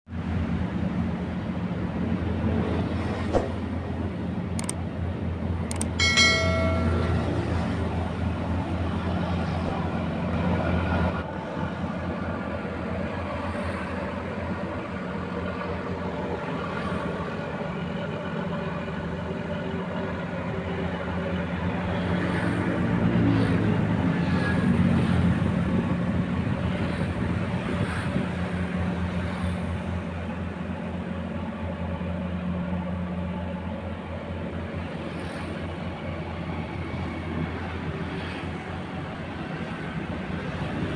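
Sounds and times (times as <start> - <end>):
sharp clicks: 4.6 - 4.8, 5.7 - 6.0
short high-pitched tone: 6.0 - 7.6.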